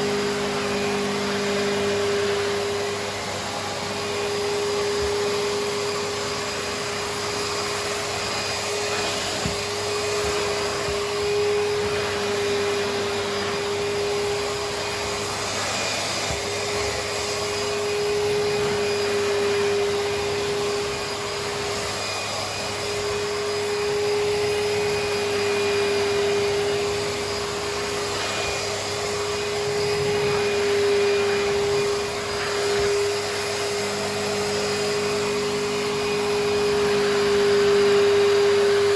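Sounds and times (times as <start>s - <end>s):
suction rushing over carpet: 0.0s - 38.9s
vacuum motor whining: 0.0s - 38.9s.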